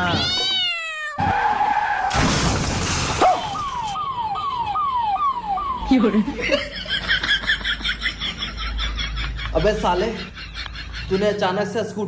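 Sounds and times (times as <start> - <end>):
crash noise: 1.6 - 4.0.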